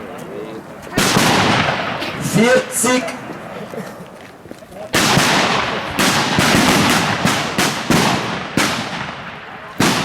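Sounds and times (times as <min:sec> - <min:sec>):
rifle shots with echo: 0:01.0 - 0:02.4, 0:04.9 - 0:10.0.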